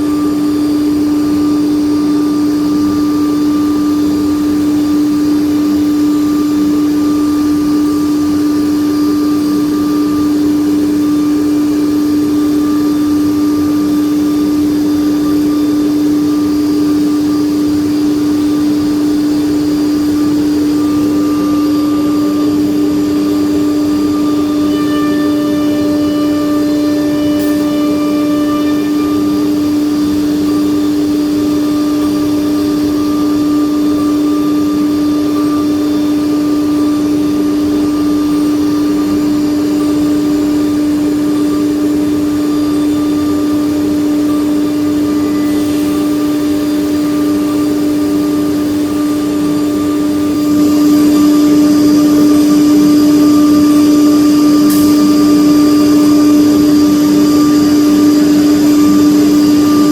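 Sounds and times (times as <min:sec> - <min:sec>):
machine spindle high whine: 0:00.0 - 0:59.9
machine noise: 0:17.0 - 0:36.3, 0:43.2 - 0:59.9.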